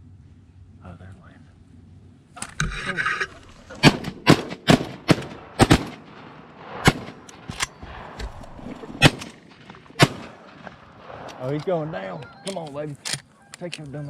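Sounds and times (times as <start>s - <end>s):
shotgun shots: 3.7s - 12.2s.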